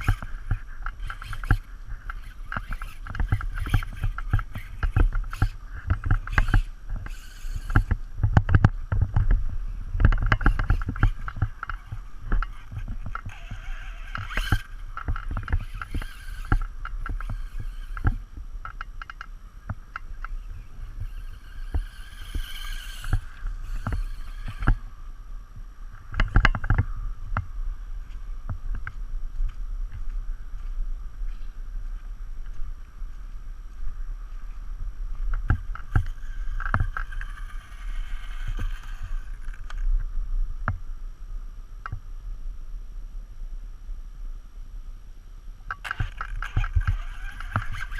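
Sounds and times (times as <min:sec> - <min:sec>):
rc truck motor whining: 0:00.0 - 0:19.2, 0:19.9 - 0:25.0, 0:35.5 - 0:39.8, 0:45.7 - 0:47.9
sharp clicks and knocks: 0:10.0 - 0:20.4.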